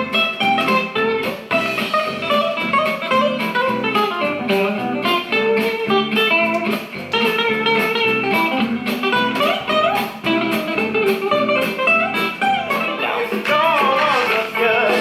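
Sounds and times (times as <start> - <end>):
plucked guitar music over speaker: 0.0 - 15.0.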